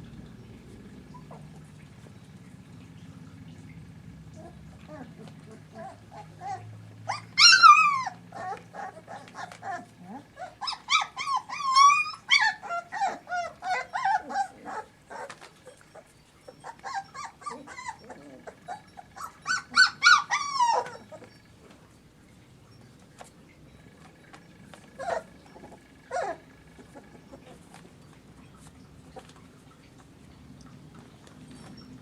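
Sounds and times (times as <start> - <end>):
puppies whining and yelping: 1.0 - 2.1, 4.4 - 21.6, 24.3 - 29.4.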